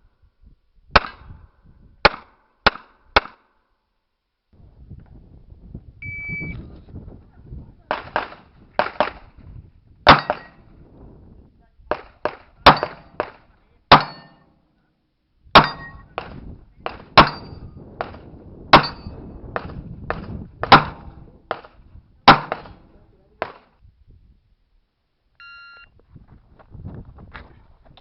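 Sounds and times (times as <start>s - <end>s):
short electronic beep: 6.0s - 6.6s, 25.4s - 25.9s
revolver gunshots: 7.9s - 9.3s, 11.9s - 14.4s, 15.6s - 23.7s.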